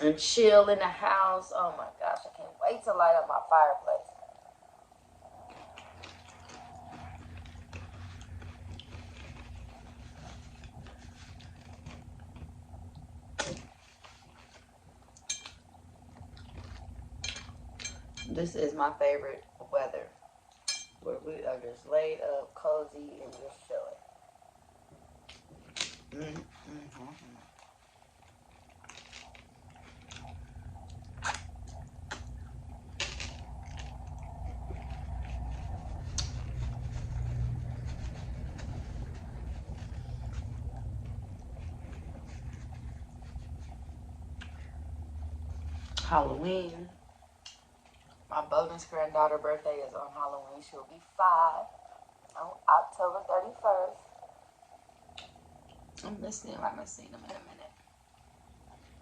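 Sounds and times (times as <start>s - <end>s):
person chewing crunchy nachos: 5.3s - 17.9s, 25.2s - 46.0s.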